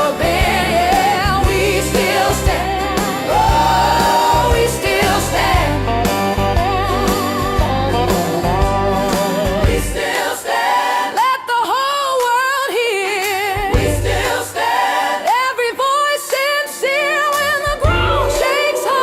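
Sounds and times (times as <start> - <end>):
woman singing with vibrato: 0.0 - 4.8, 11.2 - 14.0, 15.3 - 19.0
backing voices: 0.0 - 6.1, 17.4 - 19.0
bass guitar: 0.0 - 10.0, 13.8 - 14.3, 17.8 - 18.4
blues band playing: 0.0 - 10.1.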